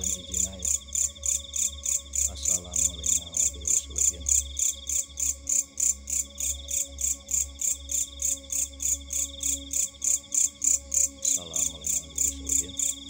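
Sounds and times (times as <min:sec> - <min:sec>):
high insect trill: 0:00.0 - 0:13.0
night insects chirping: 0:00.0 - 0:13.0.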